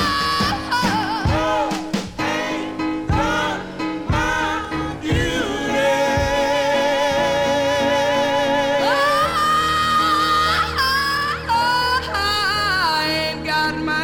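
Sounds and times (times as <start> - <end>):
drums and band: 0.0 - 7.2
wordless sung melisma: 0.0 - 14.0.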